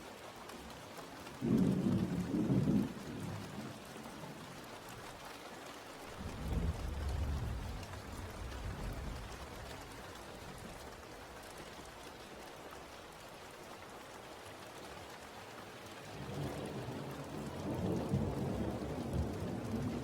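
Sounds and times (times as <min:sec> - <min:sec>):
steady rain hissing: 0:00.0 - 0:20.0
low rumble of thunder: 0:01.4 - 0:04.4, 0:06.1 - 0:11.0, 0:16.1 - 0:20.0.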